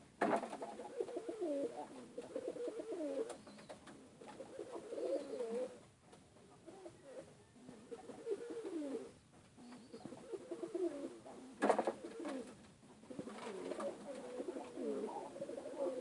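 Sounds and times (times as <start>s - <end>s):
rustling: 0.2s - 16.0s
pigeons cooing: 0.3s - 5.8s, 6.6s - 16.0s.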